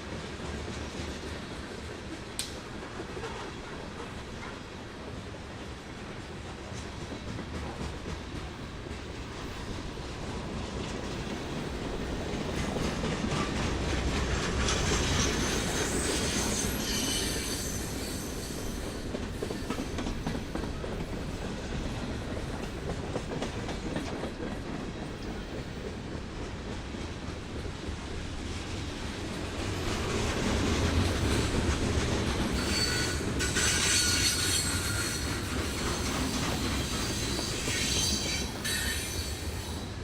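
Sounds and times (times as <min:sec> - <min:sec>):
train wheels clacking over rail joints: 0:06.4 - 0:40.0
high wheel squeal: 0:15.0 - 0:19.0, 0:32.5 - 0:39.9.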